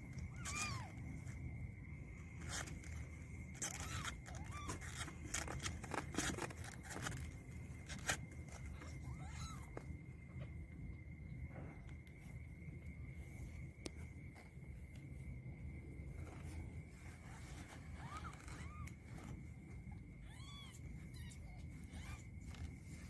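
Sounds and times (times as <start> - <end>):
kittens scratching and scraping: 0.0 - 10.0, 15.9 - 23.0
faint high-pitched whine: 0.0 - 23.0
kittens mewing: 0.1 - 1.3, 2.4 - 9.9, 20.2 - 22.7.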